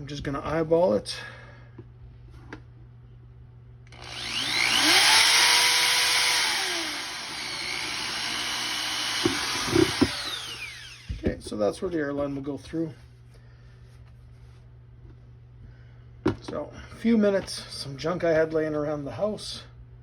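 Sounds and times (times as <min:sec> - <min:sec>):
power drill whining: 0:03.9 - 0:11.3.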